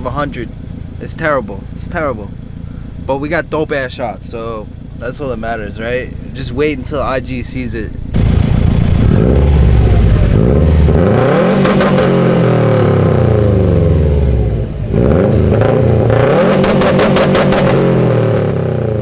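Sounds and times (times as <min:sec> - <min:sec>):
car engine accelerating hard: 0:08.1 - 0:19.0.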